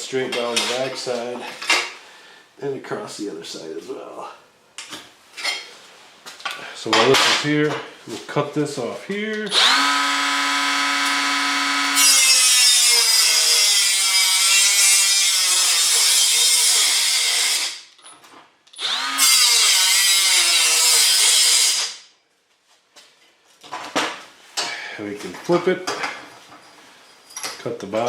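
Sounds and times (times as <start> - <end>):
power saw cutting steel: 9.5 - 17.8, 18.8 - 22.0.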